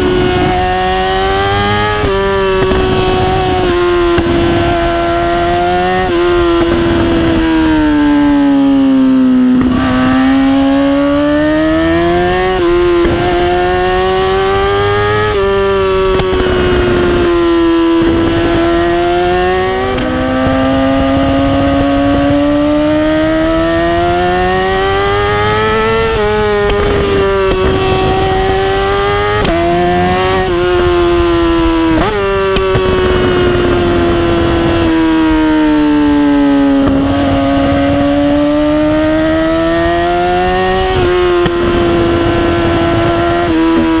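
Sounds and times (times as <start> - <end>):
motorcycle engine revving: 0.0 - 44.0
exhaust pops and crackles: 2.5 - 3.5, 4.1 - 4.6, 13.0 - 13.3, 16.1 - 16.6, 26.0 - 28.4, 29.4 - 31.1, 31.8 - 33.9, 36.8 - 37.8, 41.0 - 41.8.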